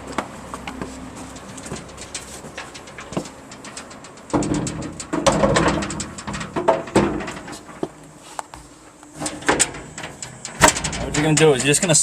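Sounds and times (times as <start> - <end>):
metal doors clanking and rattling: 1.4 - 8.0, 9.1 - 12.0.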